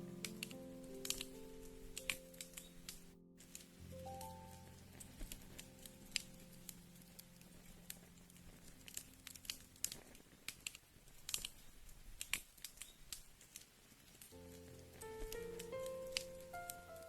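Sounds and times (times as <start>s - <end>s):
faint sustained low music notes: 0.0s - 10.0s, 14.4s - 17.0s.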